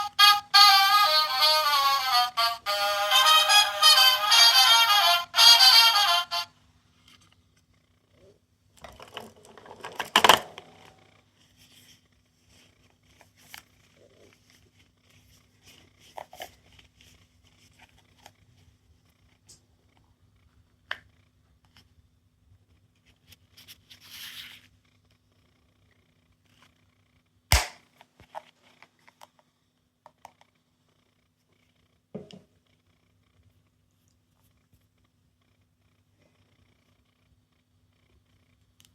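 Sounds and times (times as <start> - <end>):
plastic toys rustling and clicking: 8.8 - 11.1.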